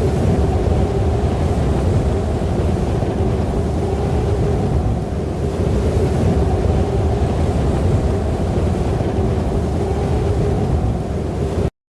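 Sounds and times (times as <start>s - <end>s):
snowstorm wind rushing: 0.0s - 11.7s.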